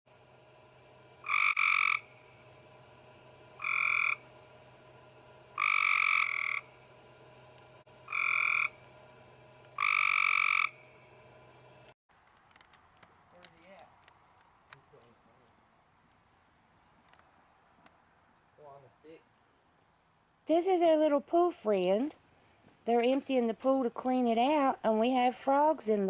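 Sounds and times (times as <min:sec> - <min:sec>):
frog calling: 0:01.2 - 0:02.3, 0:03.6 - 0:04.3, 0:05.6 - 0:06.8, 0:08.0 - 0:08.8, 0:09.8 - 0:10.9.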